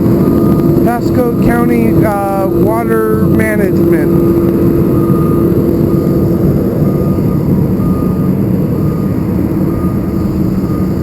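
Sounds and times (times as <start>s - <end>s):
diesel engine running: 0.0s - 11.0s
reversing alarm beeping: 0.0s - 11.0s.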